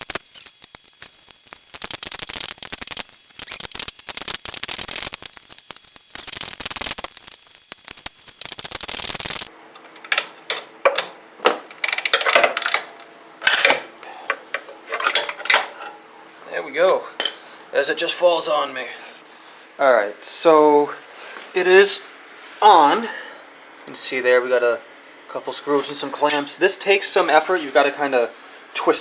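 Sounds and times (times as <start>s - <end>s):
ratchet wrench clicking rapidly: 0.0s - 9.5s.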